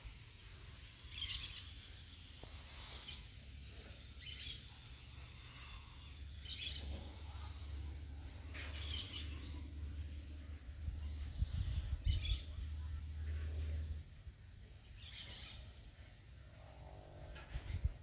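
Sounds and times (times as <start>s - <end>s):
steady low rumble: 3.5s - 15.0s
bird chirps: 6.4s - 9.8s.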